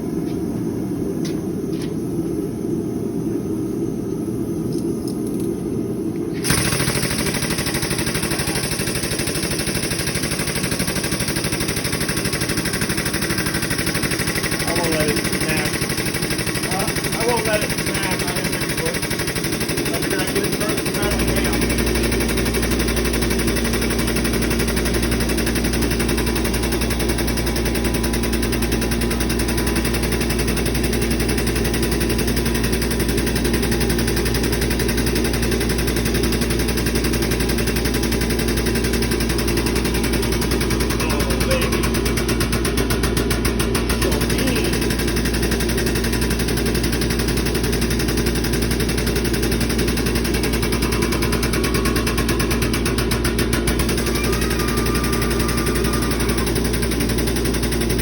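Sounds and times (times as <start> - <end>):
constant low hum: 0.0 - 6.9
fast machine rattle: 6.4 - 58.0.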